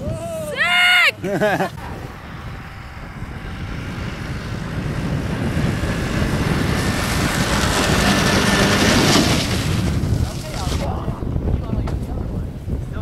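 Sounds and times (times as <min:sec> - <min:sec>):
wind noise on microphone: 0:00.0 - 0:13.0
snowmobile engine running: 0:01.2 - 0:11.4.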